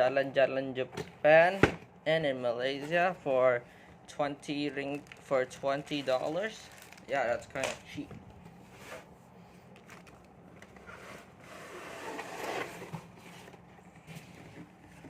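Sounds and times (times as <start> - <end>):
cardboard box scraping and rustling: 8.6 - 9.1, 10.8 - 15.0.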